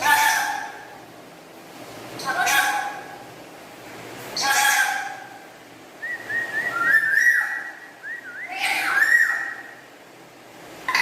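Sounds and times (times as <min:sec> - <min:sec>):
harsh parrot calls: 0:00.0 - 0:01.0, 0:02.2 - 0:03.2, 0:04.4 - 0:05.4, 0:06.7 - 0:09.9
parrot whistling: 0:06.0 - 0:09.7.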